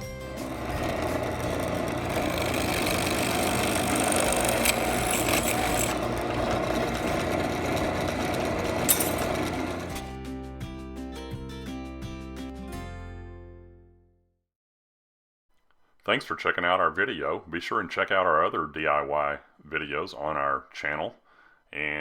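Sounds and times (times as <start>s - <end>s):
drill press motor running: 0.0s - 10.1s
background music: 0.0s - 14.0s.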